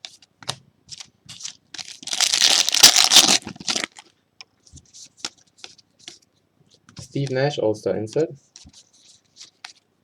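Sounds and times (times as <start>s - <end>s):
foil wrapper crinkling and tearing: 1.8s - 4.0s.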